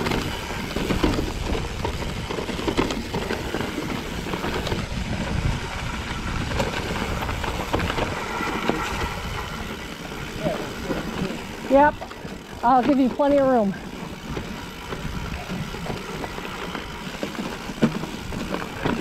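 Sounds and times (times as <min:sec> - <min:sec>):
wind rumble on microphone: 0:00.0 - 0:12.3
bike knocks and rattles: 0:00.0 - 0:19.0
bike tyres crunching over rock: 0:00.0 - 0:19.0.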